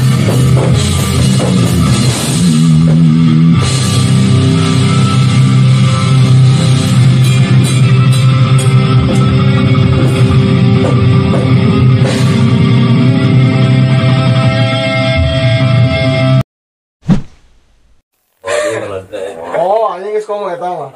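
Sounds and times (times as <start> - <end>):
distorted electric guitars and bass: 0.0 - 16.4
drum kit: 0.0 - 16.4.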